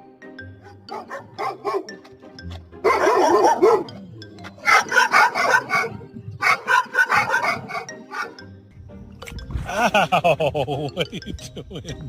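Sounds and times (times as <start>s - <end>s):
dog barking: 0.7s - 2.0s, 2.8s - 4.0s, 4.6s - 8.4s.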